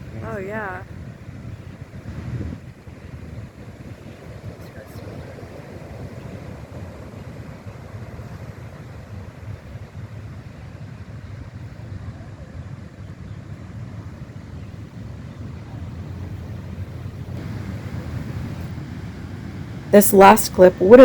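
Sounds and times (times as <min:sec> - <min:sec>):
wind buffeting microphone: 0:00.0 - 0:20.0
heavy ocean surf roaring: 0:15.0 - 0:21.0.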